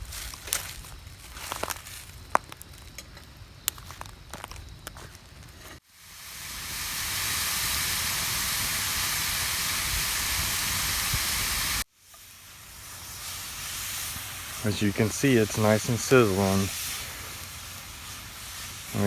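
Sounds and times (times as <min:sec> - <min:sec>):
sausage sizzling in a skillet: 0:05.7 - 0:19.0.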